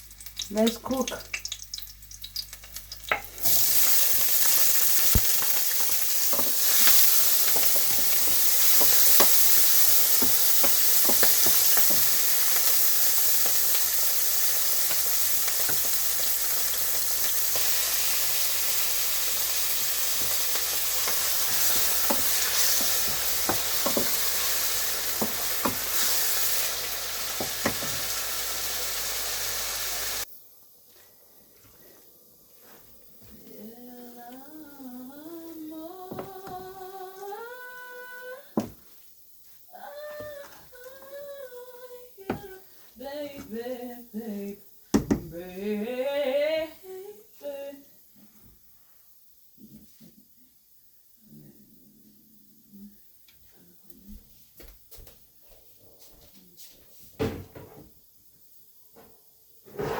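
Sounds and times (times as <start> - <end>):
food sizzling in oil: 0.0 - 30.3
utensil scraping pan: 59.7 - 59.9.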